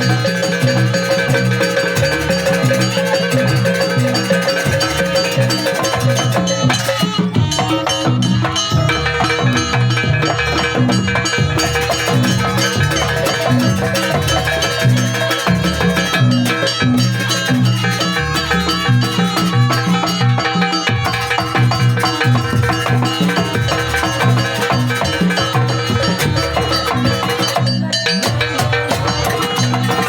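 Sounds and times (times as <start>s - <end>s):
drums beating fast rhythm: 0.0s - 30.0s
ringing metal percussion: 0.0s - 30.0s.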